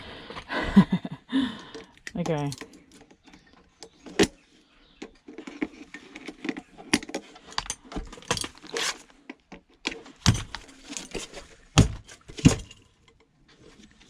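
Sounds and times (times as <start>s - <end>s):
metal parts clinking: 1.8s - 3.2s.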